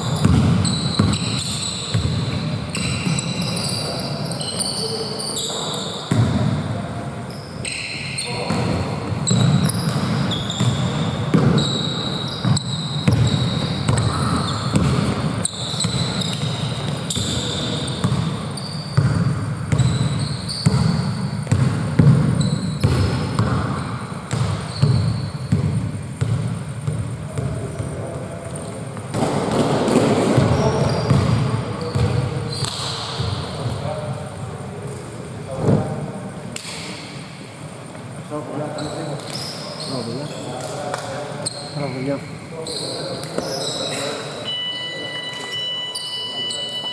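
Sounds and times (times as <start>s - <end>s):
basketballs bouncing on court floor: 0.0s - 4.0s, 6.1s - 6.8s, 8.3s - 33.9s
sneaker squeaks: 0.0s - 36.0s, 38.5s - 46.9s.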